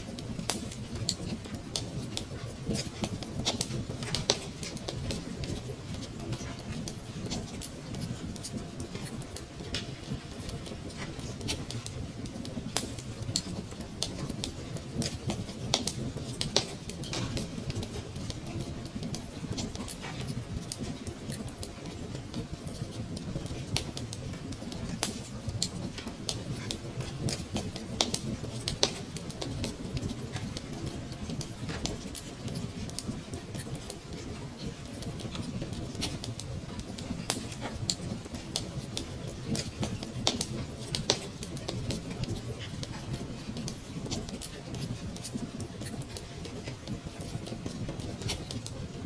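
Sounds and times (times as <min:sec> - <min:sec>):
fire crackling and popping: 0:00.0 - 0:49.0
low rumble of flames: 0:00.0 - 0:49.0.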